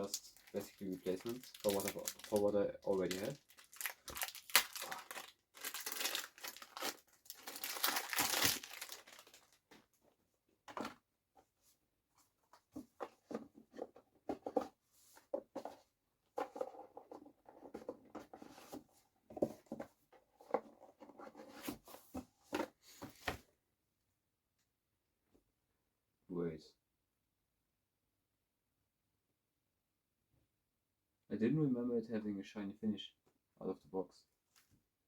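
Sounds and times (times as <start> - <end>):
plastic packaging crinkling and tearing: 0.0 - 9.6.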